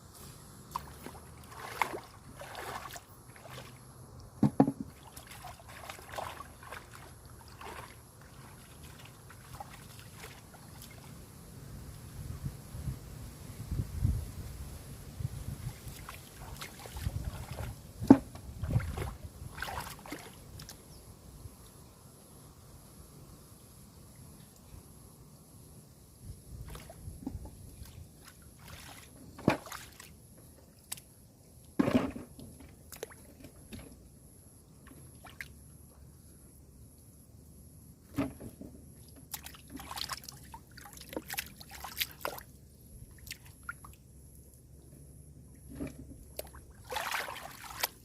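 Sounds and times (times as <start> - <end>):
water sloshing and splashing: 0.7 - 11.2, 15.5 - 20.8, 26.6 - 34.0, 34.8 - 36.0, 38.0 - 44.0, 45.5 - 48.0.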